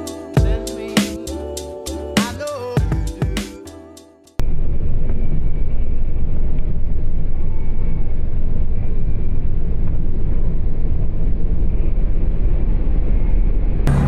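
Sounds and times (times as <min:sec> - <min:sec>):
car road and engine rumble: 0:04.4 - 0:14.0.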